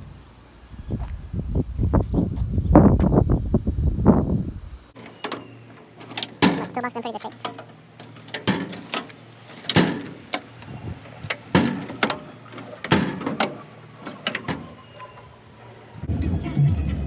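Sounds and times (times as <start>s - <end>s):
metal toolbox drawers sliding: 5.0s - 15.8s.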